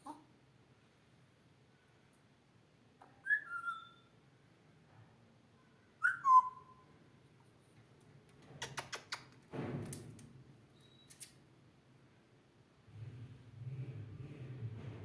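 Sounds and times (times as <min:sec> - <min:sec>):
parrot whistling: 0:03.2 - 0:04.1, 0:06.0 - 0:06.8.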